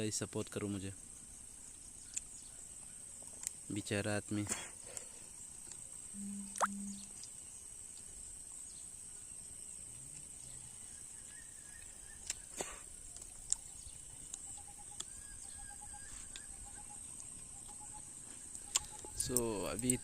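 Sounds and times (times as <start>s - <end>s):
high insect drone: 0.0s - 20.0s
faint bird chirps: 4.8s - 7.7s, 8.5s - 20.0s.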